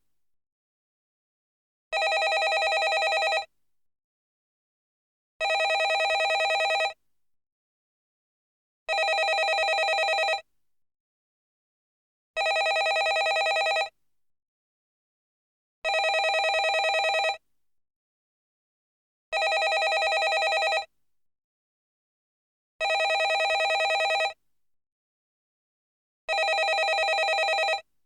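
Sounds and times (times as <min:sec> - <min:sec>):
telephone bell ringing: 0:02.0 - 0:03.5, 0:05.4 - 0:07.0, 0:08.9 - 0:10.4, 0:12.4 - 0:13.9, 0:15.9 - 0:17.4, 0:19.4 - 0:20.9, 0:22.8 - 0:24.4, 0:26.3 - 0:27.8.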